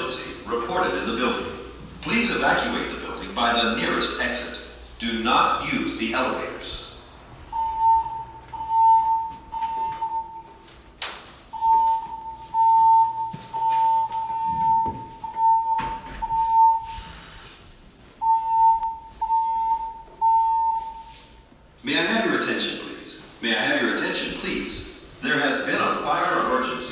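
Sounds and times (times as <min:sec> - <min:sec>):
fire alarm high beeps: 0:07.5 - 0:10.8, 0:11.5 - 0:17.4, 0:18.2 - 0:21.6.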